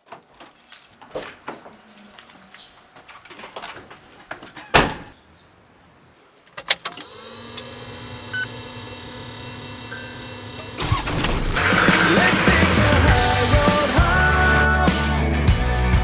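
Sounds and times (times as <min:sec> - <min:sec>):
engine starting and idling: 0:06.6 - 0:15.8
loud music: 0:11.6 - 0:16.0.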